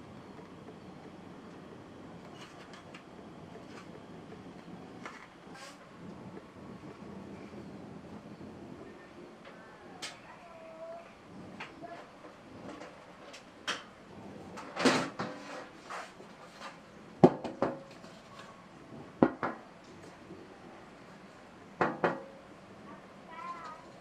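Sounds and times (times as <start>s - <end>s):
short scrape: 5.1s - 5.8s, 15.2s - 16.8s.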